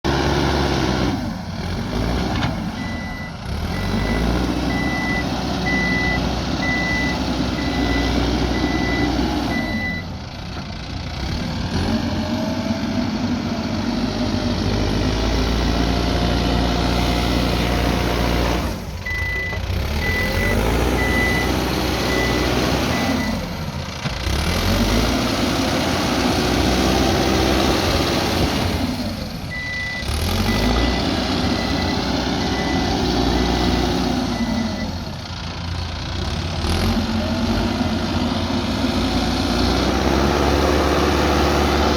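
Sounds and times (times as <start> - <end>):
diesel engine running: 0.0 - 41.9
reversing alarm beeping: 2.8 - 10.1, 19.0 - 23.5, 29.5 - 35.1.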